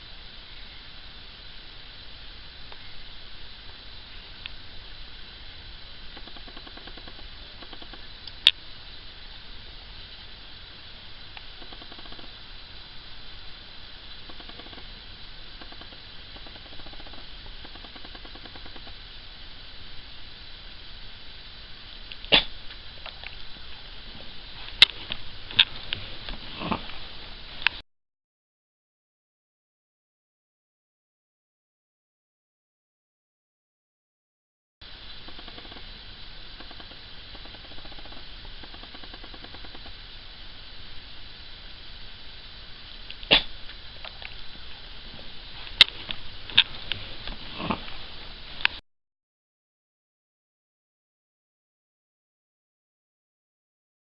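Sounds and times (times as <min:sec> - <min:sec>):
low hiss: 0:00.0 - 0:27.8, 0:34.8 - 0:48.8
dog nasal snort: 0:22.3 - 0:22.6, 0:26.4 - 0:27.0, 0:43.2 - 0:43.6, 0:47.5 - 0:48.0.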